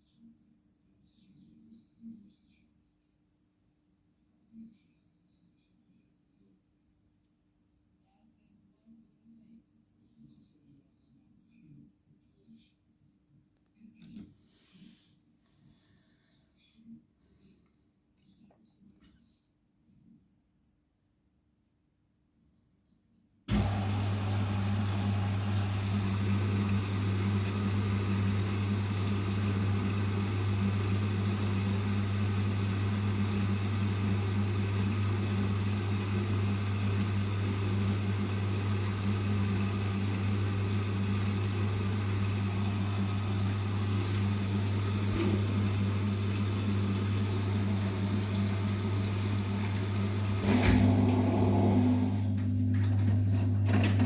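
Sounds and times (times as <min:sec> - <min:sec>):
washing machine clunk: 0:23.5 - 0:54.0
washing machine hum and churn: 0:23.5 - 0:54.0.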